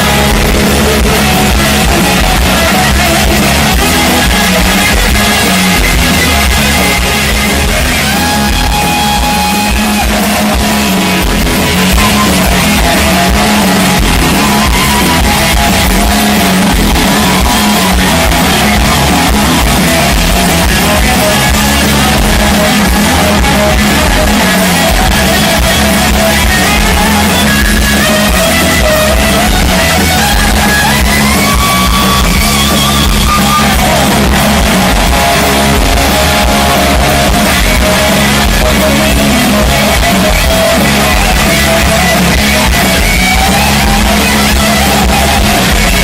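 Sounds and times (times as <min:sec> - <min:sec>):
electric guitar: 0:00.0 - 0:46.0
live rock band: 0:00.0 - 0:46.0.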